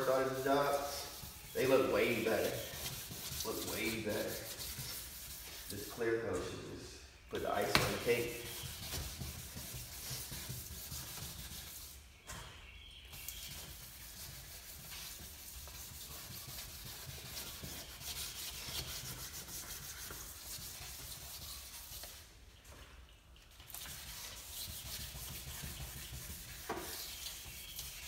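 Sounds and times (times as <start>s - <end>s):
sandpaper rubbing on plastic: 0.0s - 6.0s, 7.6s - 12.0s, 13.1s - 22.2s, 23.8s - 28.0s.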